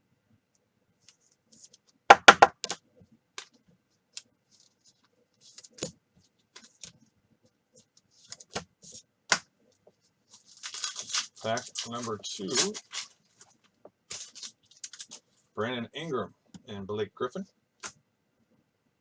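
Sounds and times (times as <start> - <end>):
cards tapping on table: 2.1 - 2.8
plastic cards clicking: 10.6 - 13.1.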